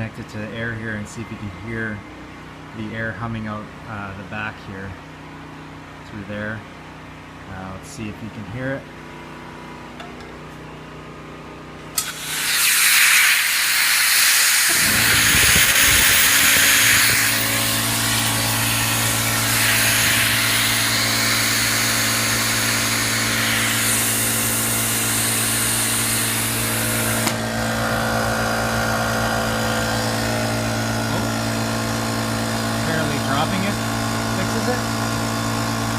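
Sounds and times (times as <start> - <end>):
steady low hum: 0.0 - 12.4, 14.7 - 35.9
compressed air hissing: 12.0 - 28.2.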